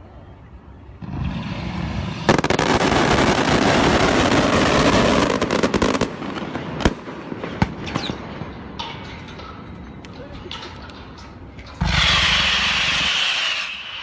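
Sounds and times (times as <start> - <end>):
firework bangs: 1.0 - 8.7, 11.7 - 14.0
fireworks crackling: 1.0 - 14.0
falling firework whistle: 11.8 - 14.0.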